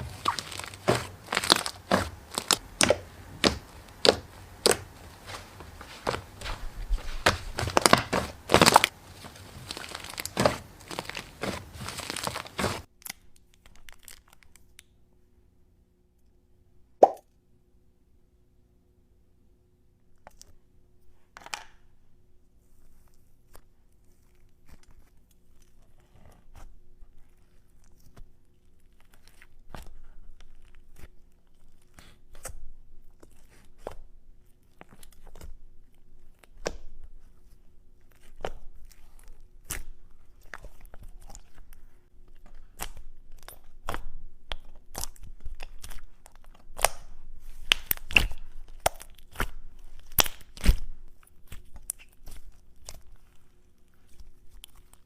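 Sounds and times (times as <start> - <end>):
slime squeezed by hand: 0.0 - 12.9.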